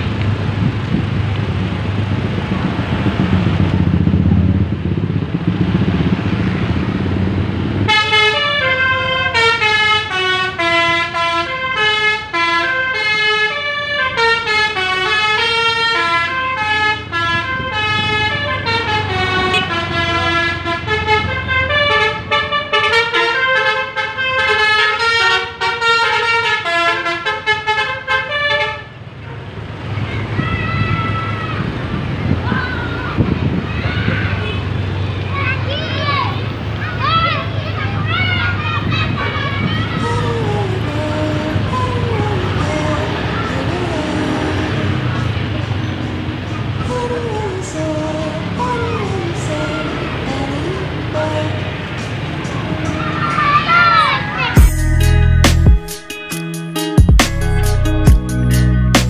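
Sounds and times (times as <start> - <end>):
bus engine running: 0.0 - 55.9
air horn melody: 7.9 - 29.0.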